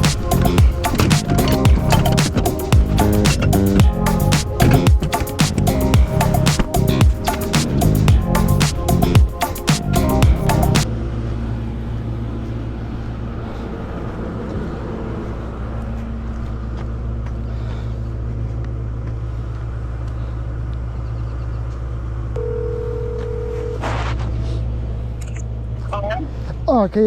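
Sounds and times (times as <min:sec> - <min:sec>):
vehicle engine idling: 0:00.0 - 0:05.0
phone ringing tone: 0:22.4 - 0:23.8.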